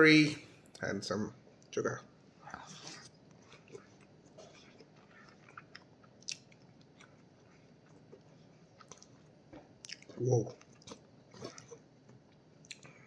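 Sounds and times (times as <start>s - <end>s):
person chewing: 2.4s - 13.0s
wet mouth clicks: 12.6s - 12.9s.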